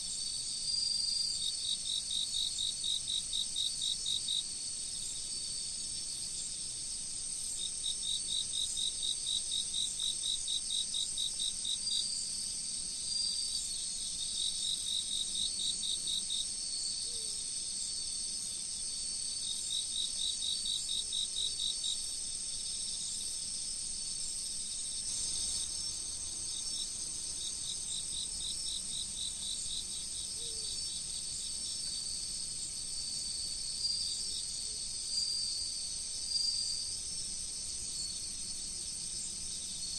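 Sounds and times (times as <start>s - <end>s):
continuous high-pitched insect trill: 0.0s - 39.9s.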